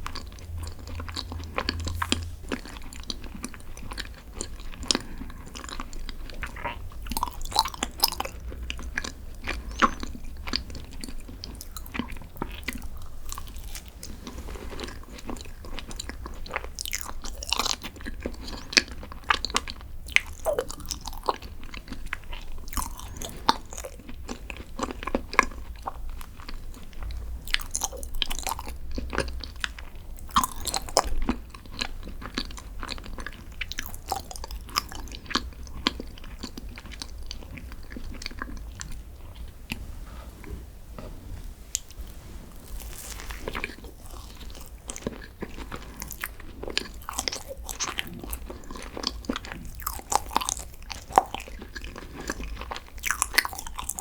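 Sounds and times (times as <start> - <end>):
chewing and biting: 0.0 - 39.8, 42.7 - 54.0
light crunch: 38.8 - 46.2.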